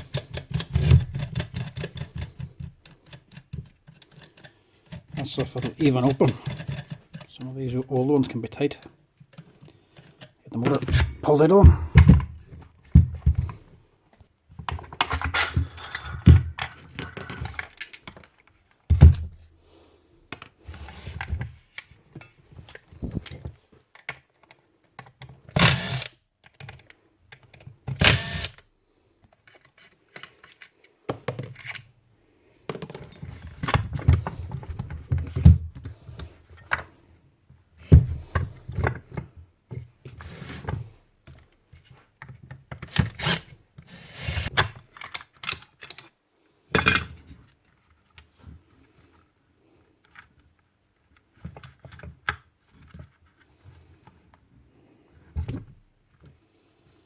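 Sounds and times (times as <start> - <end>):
clicks and knocks of tools: 0.0 - 7.4, 44.2 - 46.2.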